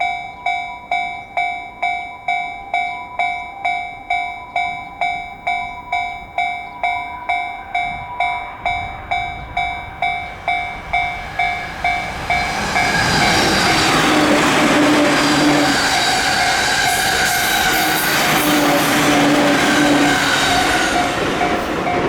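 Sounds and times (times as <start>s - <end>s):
level-crossing warning bell ringing: 0.0s - 22.0s
electric train passing: 1.3s - 22.0s
train wheel and motor hum: 8.6s - 22.0s.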